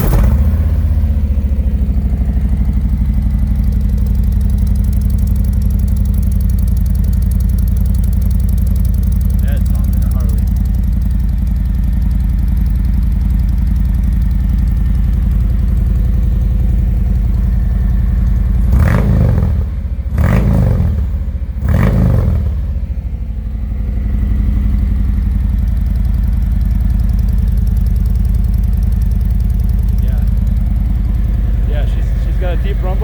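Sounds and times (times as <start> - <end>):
motorcycle engine idling and revving: 0.0 - 33.0.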